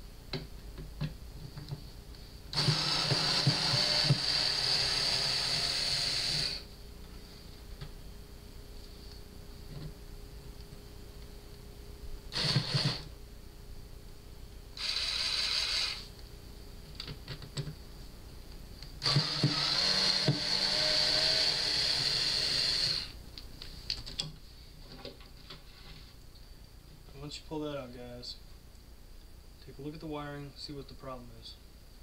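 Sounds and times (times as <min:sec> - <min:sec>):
power drill motor running: 0:02.5 - 0:06.7, 0:12.3 - 0:13.1, 0:14.8 - 0:16.1, 0:19.0 - 0:23.1.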